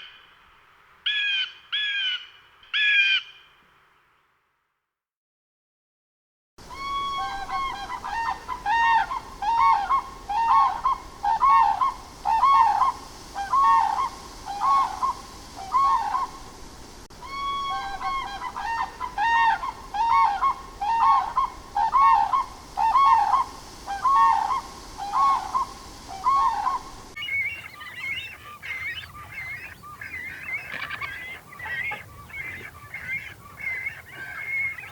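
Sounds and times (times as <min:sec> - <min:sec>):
waterfowl honking: 0:06.7 - 0:16.4, 0:17.2 - 0:34.9.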